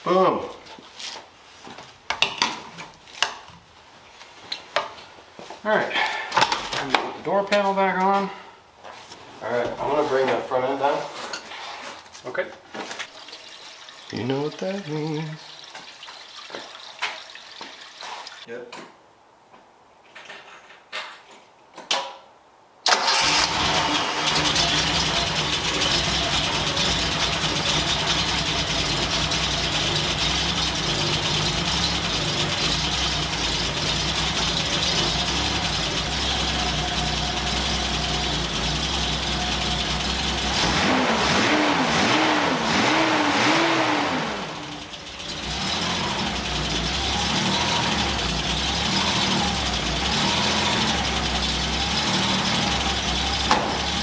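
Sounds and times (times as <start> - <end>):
car engine starting and idling: 22.9 - 54.0
engine revving: 22.9 - 54.0.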